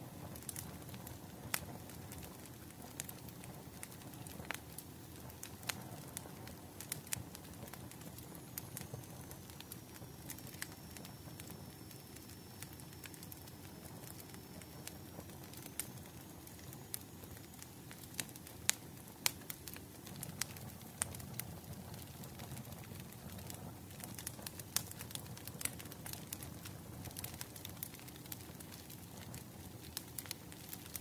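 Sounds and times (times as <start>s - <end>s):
low rumble of burning: 0.0s - 31.0s
wood fire crackling: 0.0s - 31.0s.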